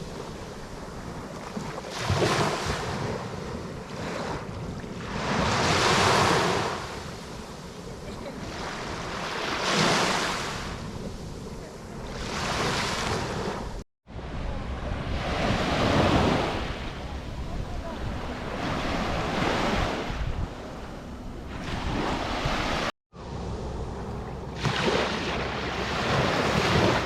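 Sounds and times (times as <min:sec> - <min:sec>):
sea waves breaking on shore: 0:00.0 - 0:20.8, 0:21.5 - 0:22.9, 0:24.5 - 0:27.0
wind buffeting microphone: 0:10.5 - 0:22.9.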